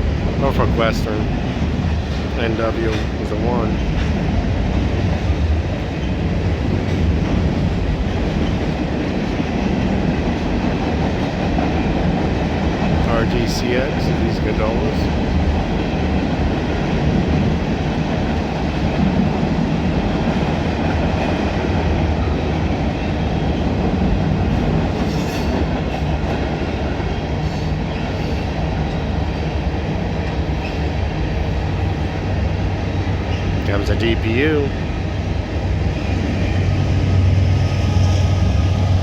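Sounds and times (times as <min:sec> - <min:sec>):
steel wheels on rail: 0:00.0 - 0:39.0.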